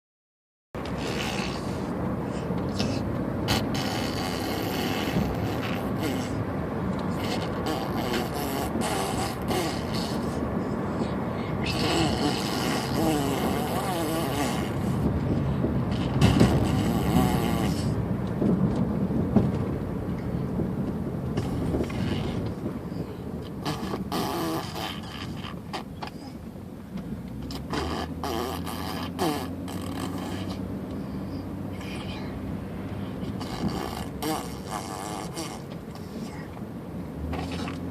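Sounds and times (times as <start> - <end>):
baby blowing raspberries: 0.8 - 6.4, 7.1 - 15.1, 15.8 - 18.0, 21.4 - 22.7, 23.4 - 26.4, 27.5 - 32.5, 33.1 - 36.6, 37.3 - 37.9.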